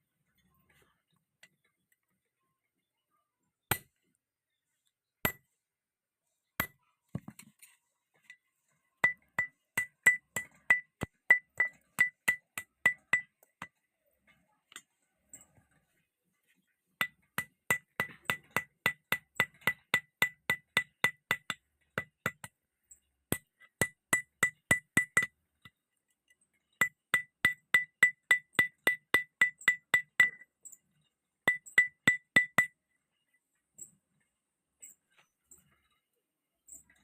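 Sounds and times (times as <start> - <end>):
hammer striking steel on anvil: 9.0 - 13.8, 17.0 - 22.5, 26.8 - 30.5, 31.5 - 32.8.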